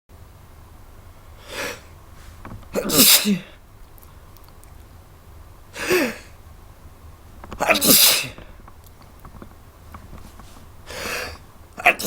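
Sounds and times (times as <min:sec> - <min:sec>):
person sneezing: 0:01.4 - 0:01.9, 0:02.7 - 0:03.6, 0:05.8 - 0:06.3, 0:07.6 - 0:08.5.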